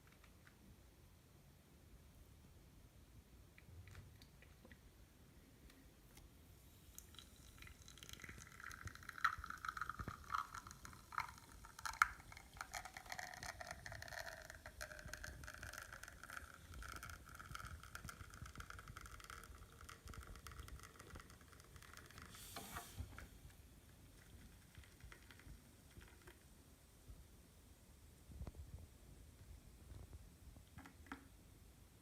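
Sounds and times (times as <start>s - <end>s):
espresso machine trickling and spitting: 6.8s - 26.3s.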